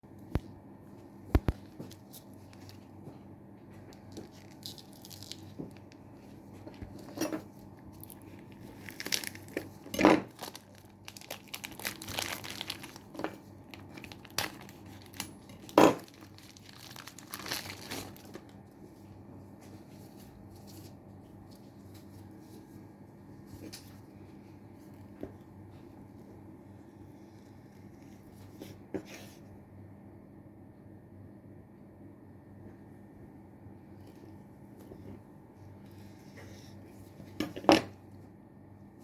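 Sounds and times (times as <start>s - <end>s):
plastic packaging crinkling: 3.8s - 18.6s.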